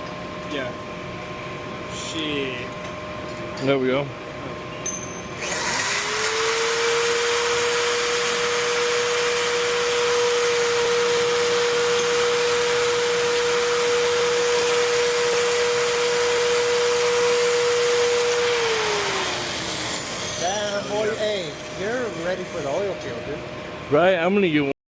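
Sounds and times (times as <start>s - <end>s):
electric pipe threader whining: 4.8s - 24.4s.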